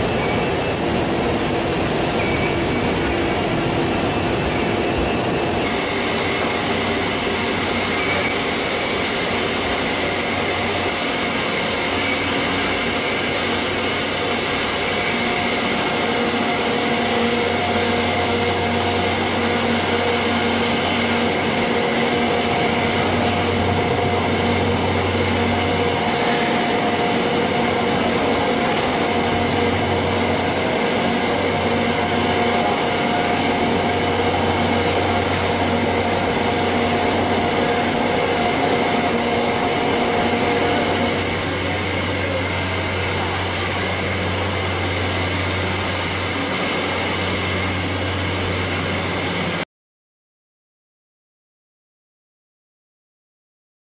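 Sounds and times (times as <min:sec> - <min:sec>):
factory machinery humming: 0:00.0 - 0:49.6.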